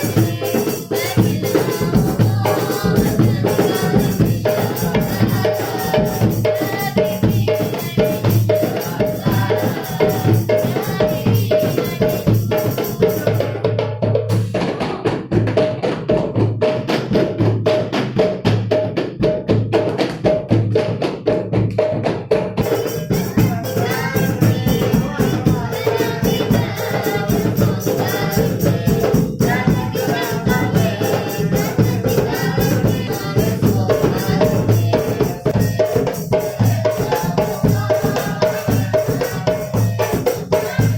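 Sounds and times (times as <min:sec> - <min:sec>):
tambourine jingles: 0:00.0 - 0:13.5, 0:22.6 - 0:40.9
hand drums beating: 0:00.0 - 0:40.9.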